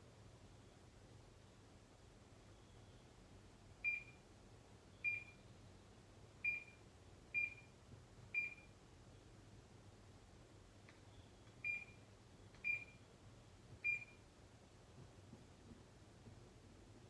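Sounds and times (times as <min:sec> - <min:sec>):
multimeter short high beeps: 0:07.4 - 0:07.7.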